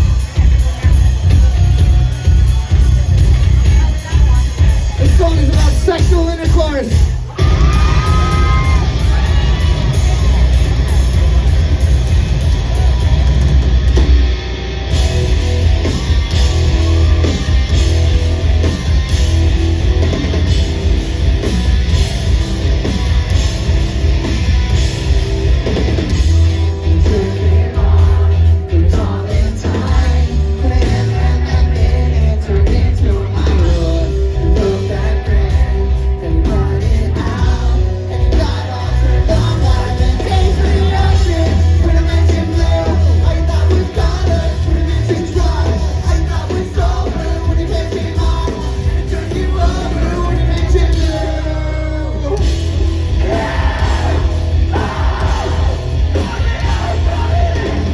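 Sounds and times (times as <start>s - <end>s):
live rock band playing loudly: 0.0s - 57.9s
person singing: 26.8s - 52.5s, 53.2s - 57.9s.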